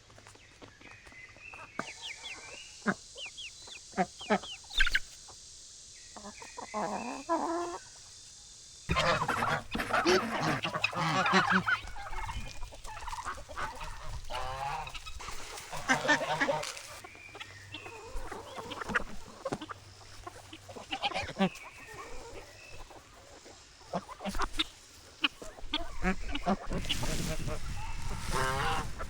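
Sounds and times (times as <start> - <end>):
chickens clucking: 0.2 - 29.0.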